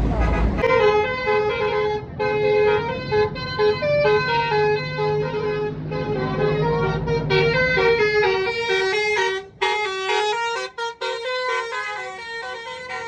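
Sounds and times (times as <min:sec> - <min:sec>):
musical bus horn melody: 0:00.1 - 0:13.0.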